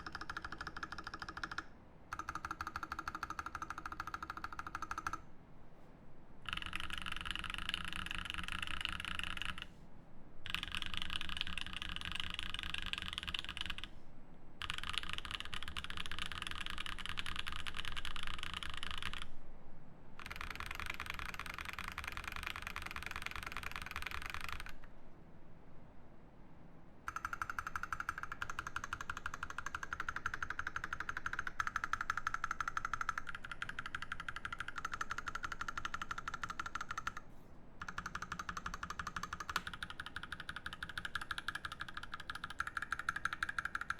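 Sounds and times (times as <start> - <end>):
fast typing on mechanical keyboard: 0.0 - 5.2, 6.4 - 9.7, 10.5 - 14.0, 14.6 - 19.3, 20.2 - 24.9, 27.1 - 37.2, 37.8 - 43.9.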